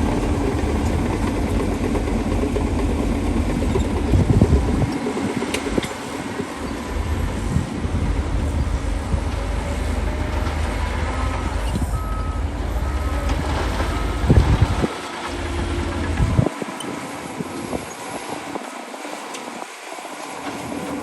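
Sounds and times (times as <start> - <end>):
heavy diesel machinery rumbling: 0.0 - 21.0
reversing alarm beeping: 11.1 - 15.0.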